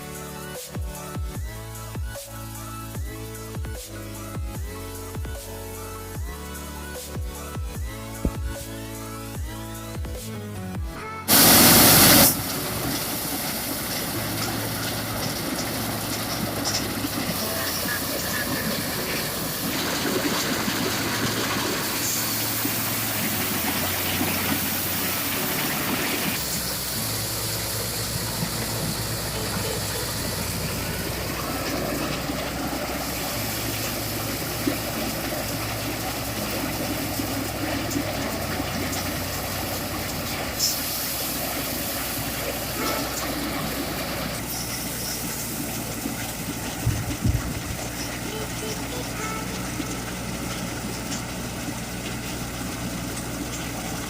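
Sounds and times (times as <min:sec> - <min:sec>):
thresher engine hum: 0:07.1 - 0:54.0
blower rushing noise: 0:11.3 - 0:49.4.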